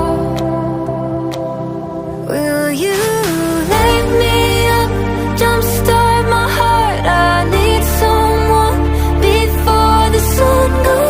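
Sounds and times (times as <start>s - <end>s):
background song: 0.0s - 11.0s.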